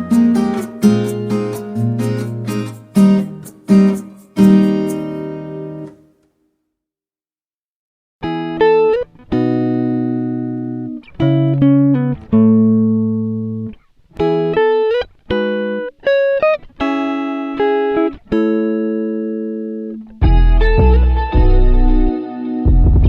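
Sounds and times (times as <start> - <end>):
guitar playing slow chords: 0.0 - 6.1, 8.2 - 23.0.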